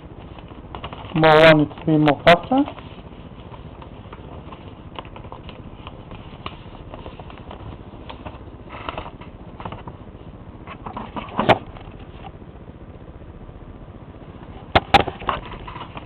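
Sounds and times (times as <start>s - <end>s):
paper being folded and creased: 0.2s - 9.9s.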